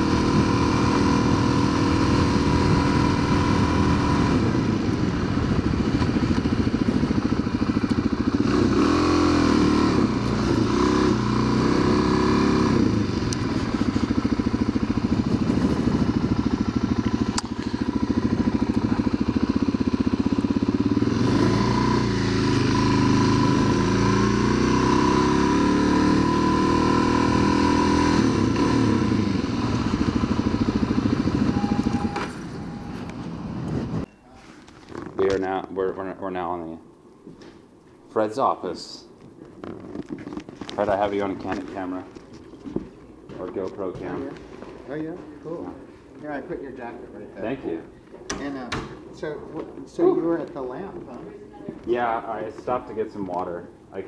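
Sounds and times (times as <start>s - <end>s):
motorcycle engine revving: 0.0s - 34.1s.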